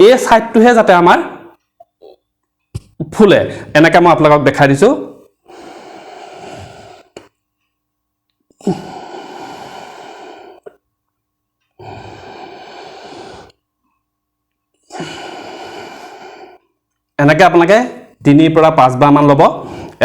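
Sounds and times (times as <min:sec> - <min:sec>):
man breathing deeply: 0:05.4 - 0:07.3, 0:08.6 - 0:10.8, 0:11.8 - 0:13.6, 0:14.8 - 0:16.7, 0:19.6 - 0:20.0.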